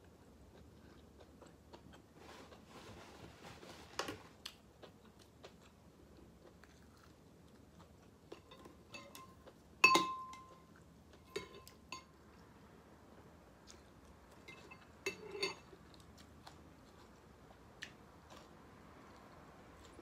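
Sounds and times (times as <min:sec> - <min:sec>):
soft chewing: 0:00.0 - 0:20.0
tableware clinking: 0:08.4 - 0:12.1, 0:14.4 - 0:15.8.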